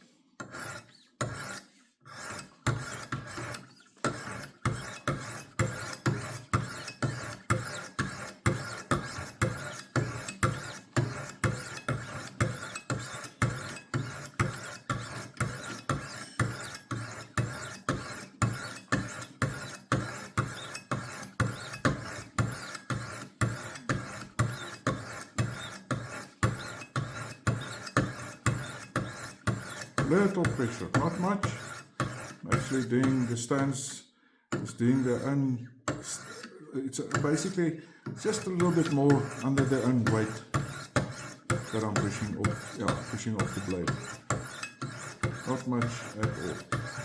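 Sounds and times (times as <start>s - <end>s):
sharpening stones rasping on knife: 0.4s - 33.6s, 34.5s - 37.6s, 38.2s - 47.0s.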